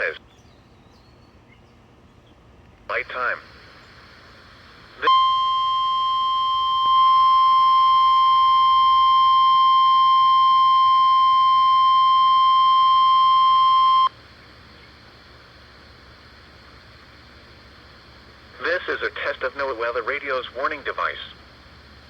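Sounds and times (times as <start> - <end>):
loud high warning beep: 5.0 - 14.1.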